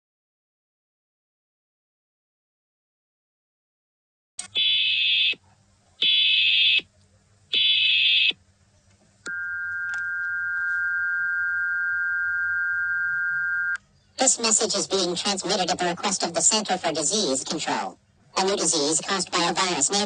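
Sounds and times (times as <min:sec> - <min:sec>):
two-tone attention signal: 0:09.3 - 0:13.8.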